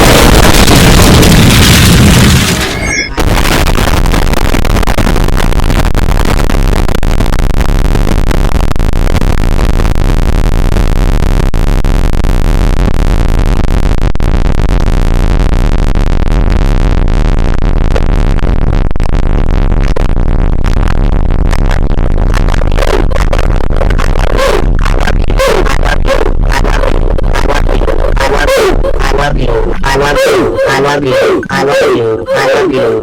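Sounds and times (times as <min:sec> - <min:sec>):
distorted electronic music: 0:22.2 - 0:33.0.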